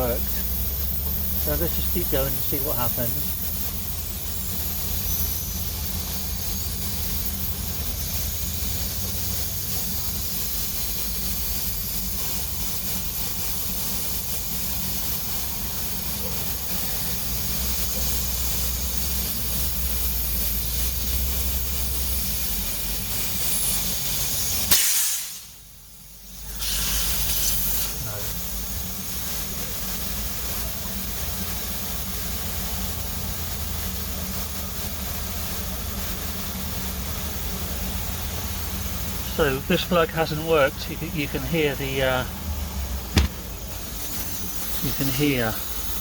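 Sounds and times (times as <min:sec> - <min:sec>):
compressed air hissing: 0:00.0 - 0:28.6, 0:38.7 - 0:46.0.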